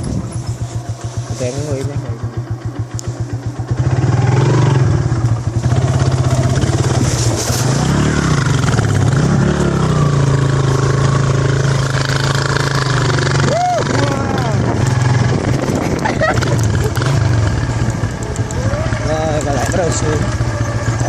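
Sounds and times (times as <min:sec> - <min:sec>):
motorcycle engine revving: 0:00.0 - 0:21.0.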